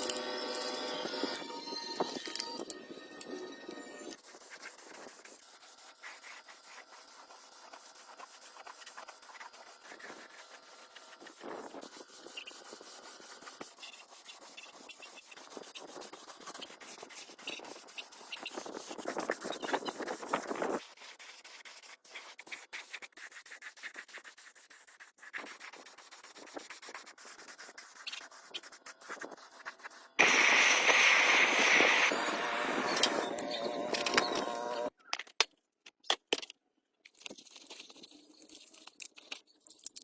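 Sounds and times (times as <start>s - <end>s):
hand rubbing and scraping: 4.1s - 34.9s.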